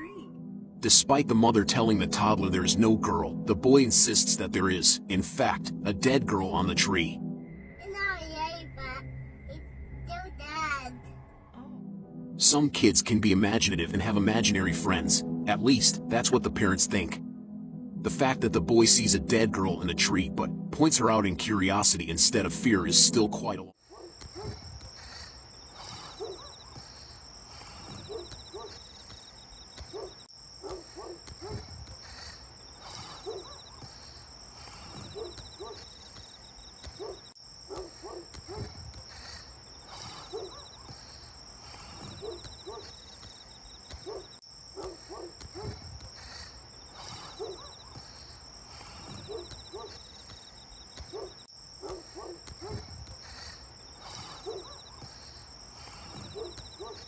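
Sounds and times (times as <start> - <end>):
pulsing insect chirp: 0.0 - 57.0
high-pitched cricket trill: 6.5 - 12.0, 23.8 - 57.0
short lower insect calls: 23.8 - 57.0.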